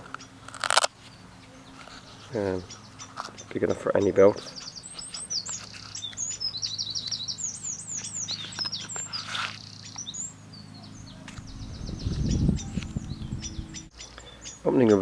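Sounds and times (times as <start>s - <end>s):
small birds chirping: 0.0s - 15.0s
steady low hum: 0.0s - 15.0s
low rumble: 10.9s - 13.9s.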